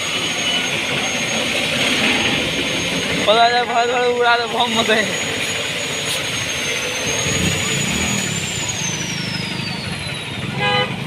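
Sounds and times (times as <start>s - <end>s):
thin high tone: 0.0s - 10.5s
compressed air hissing into tyre: 4.2s - 10.6s.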